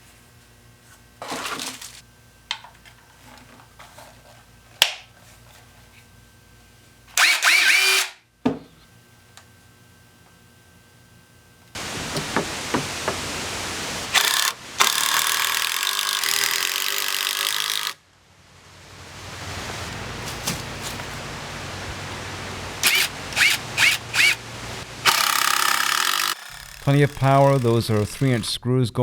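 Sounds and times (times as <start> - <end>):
impact driver driving screws: 7.2 - 8.2, 14.2 - 18.0, 22.8 - 24.4, 25.0 - 28.5.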